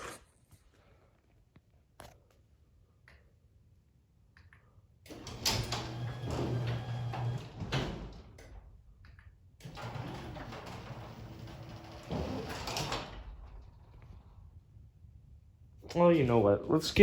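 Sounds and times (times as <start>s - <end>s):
garage door opener motor hum: 5.1s - 8.9s, 9.6s - 14.5s.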